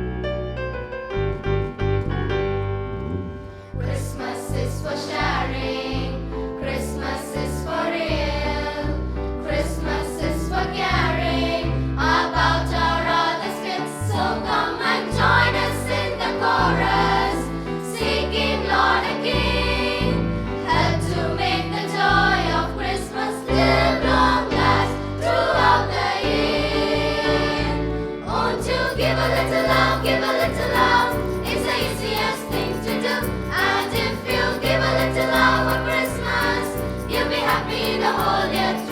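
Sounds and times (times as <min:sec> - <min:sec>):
keyboard backing with bass: 0:00.0 - 0:38.9
choir of young voices singing: 0:03.8 - 0:38.9
steady beat percussion: 0:28.9 - 0:38.9.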